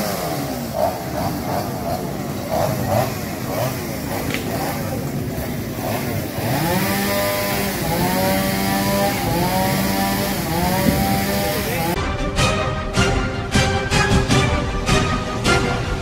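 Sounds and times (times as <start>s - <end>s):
chainsaw revving: 0.0s - 12.0s.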